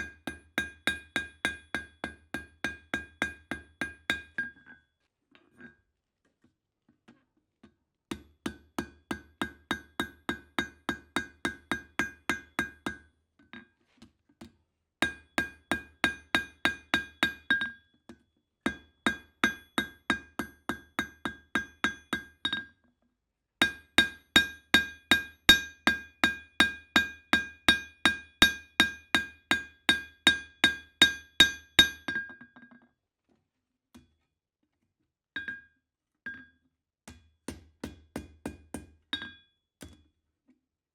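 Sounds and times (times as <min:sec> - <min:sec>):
hammer striking steel on anvil: 0:23.6 - 0:32.3.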